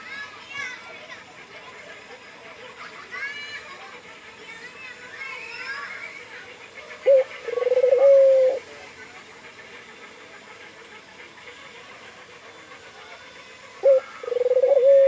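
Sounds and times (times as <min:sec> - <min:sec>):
dove cooing: 0:07.0 - 0:08.7, 0:12.6 - 0:15.0.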